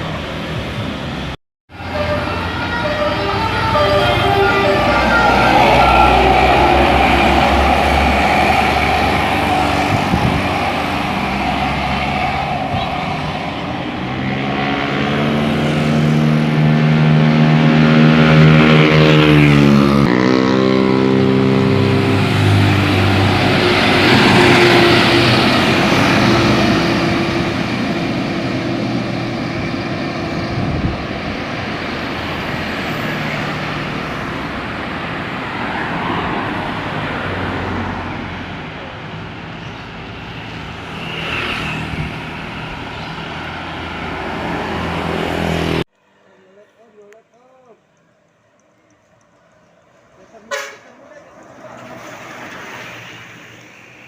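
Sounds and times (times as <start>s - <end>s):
bus engine and road noise: 0.0s - 54.0s
musical air horn chord: 1.8s - 6.4s.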